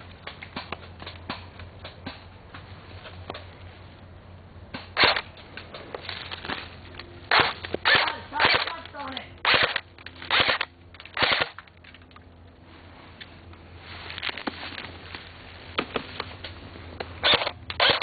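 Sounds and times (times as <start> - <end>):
airsoft guns firing: 7.3 - 11.6.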